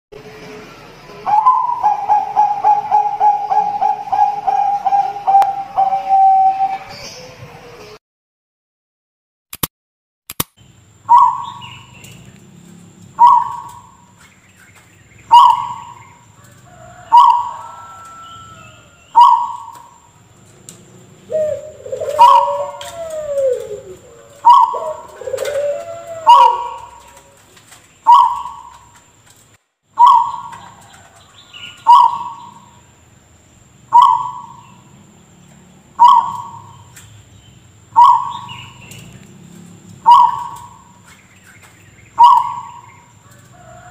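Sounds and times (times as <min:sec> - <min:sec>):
dove cough-like calls: 0:01.3 - 0:06.7, 0:21.3 - 0:27.2, 0:36.0 - 0:36.9
dove lower sliding calls: 0:01.3 - 0:06.9, 0:13.2 - 0:14.1, 0:15.3 - 0:20.0, 0:21.3 - 0:28.9, 0:31.7 - 0:32.7, 0:33.9 - 0:34.6, 0:36.0 - 0:36.9, 0:38.0 - 0:39.1, 0:40.0 - 0:43.9.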